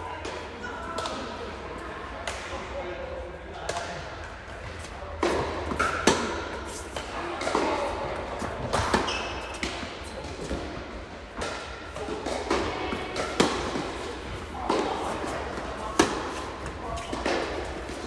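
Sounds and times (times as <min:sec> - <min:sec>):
racquet striking tennis ball: 0:05.2 - 0:07.8, 0:11.3 - 0:18.0.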